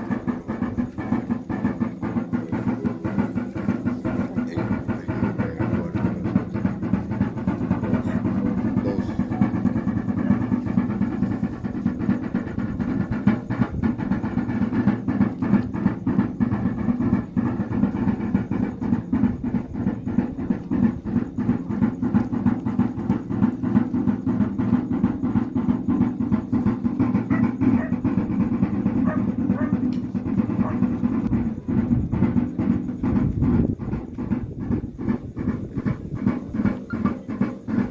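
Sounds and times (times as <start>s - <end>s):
drum beaten with sticks: 0.0s - 37.9s.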